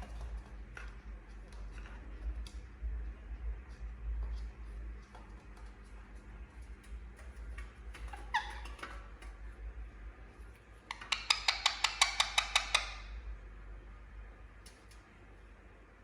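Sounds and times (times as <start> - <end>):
parrot calling: 8.0 - 9.0, 10.9 - 13.2.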